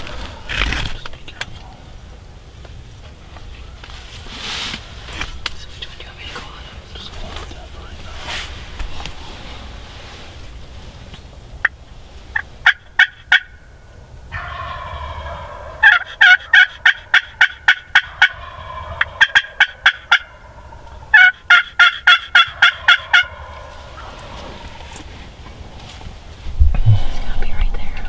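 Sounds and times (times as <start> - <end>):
turkey calling: 12.3 - 25.2.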